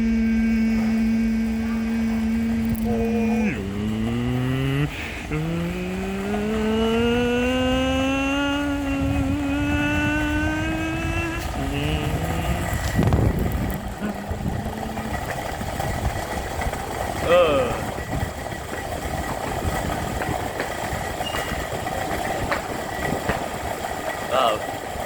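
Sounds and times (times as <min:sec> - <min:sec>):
person humming rising tone: 0:00.0 - 0:15.9.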